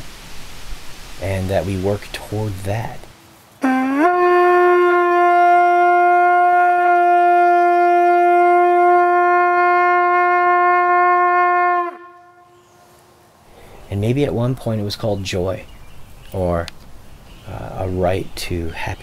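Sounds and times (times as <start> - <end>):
long horn note: 3.6 - 12.8.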